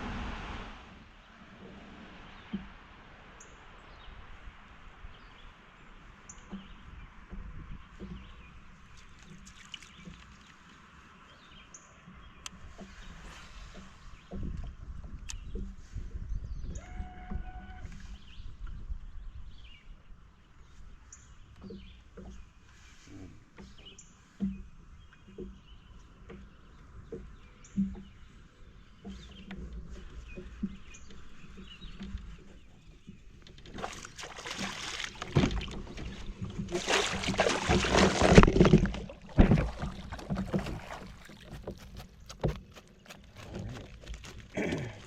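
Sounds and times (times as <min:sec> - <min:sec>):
low rumble: 0:00.0 - 0:01.1
water splashing: 0:08.9 - 0:11.2, 0:30.0 - 0:45.0
knocks on a kayak: 0:37.0 - 0:41.8.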